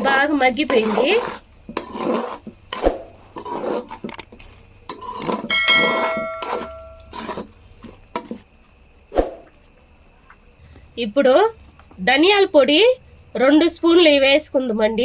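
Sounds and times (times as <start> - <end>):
metal spoon scraping a pan: 0.0 - 8.5
metal clang: 5.4 - 7.1.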